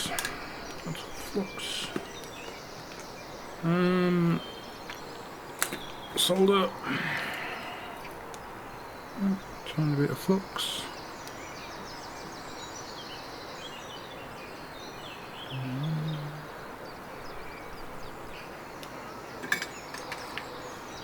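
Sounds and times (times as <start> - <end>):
faint bird chirps: 0.0 - 21.0
steady background hiss: 0.0 - 21.0
low voice hum: 3.6 - 4.5, 15.5 - 16.8.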